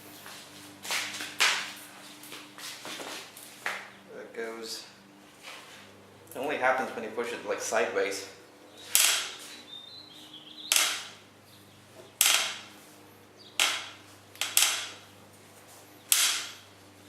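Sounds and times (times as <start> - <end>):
bicycle frame clicking: 8.9 - 9.4, 10.7 - 11.2, 13.6 - 15.0, 16.1 - 16.6.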